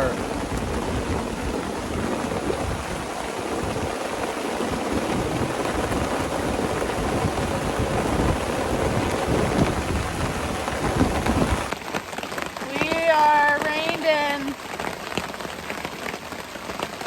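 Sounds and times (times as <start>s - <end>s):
gusting wind rumble: 0.0s - 11.7s
heavy rain on a tarp: 0.0s - 17.0s.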